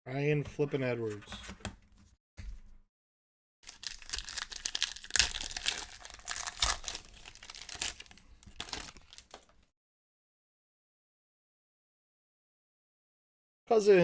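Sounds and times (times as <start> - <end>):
plastic wrapper crinkling and tearing: 3.6 - 9.6.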